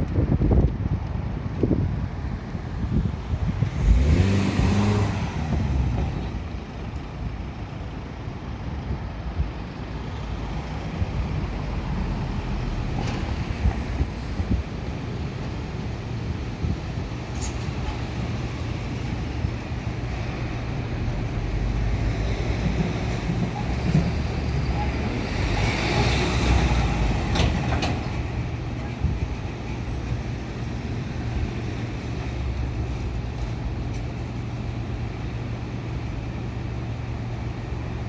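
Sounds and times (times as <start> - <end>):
diesel engine droning: 9.5 - 14.6.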